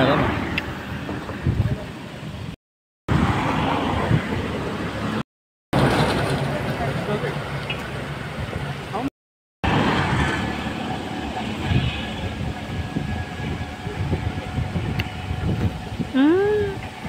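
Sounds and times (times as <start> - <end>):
vehicle travel rumble: 0.0 - 17.0.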